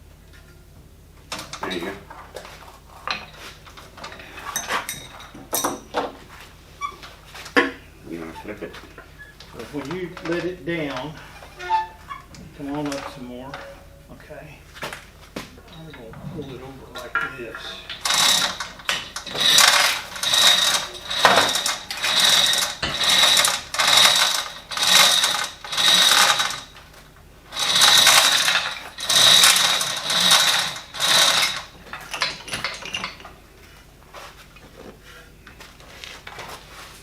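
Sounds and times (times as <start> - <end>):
metal ratcheting: 1.3 - 6.1, 8.2 - 14.1, 15.6 - 33.4.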